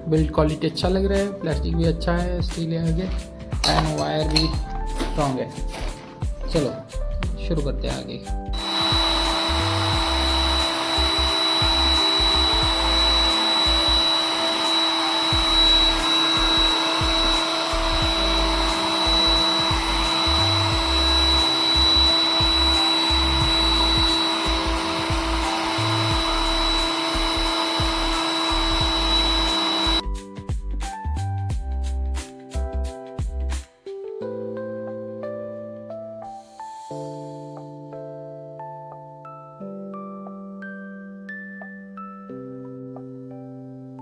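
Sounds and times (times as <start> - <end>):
heat gun blowing air: 2.8 - 7.3, 8.6 - 30.0.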